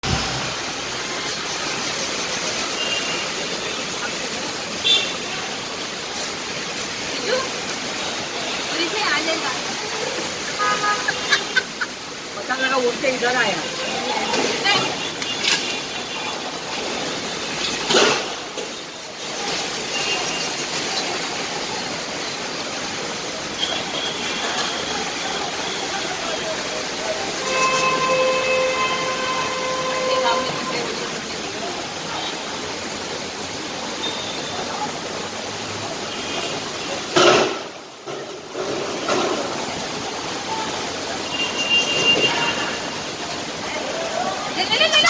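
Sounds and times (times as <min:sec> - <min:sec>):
heavy rain: 0:00.0 - 0:45.0
wind: 0:00.0 - 0:45.0.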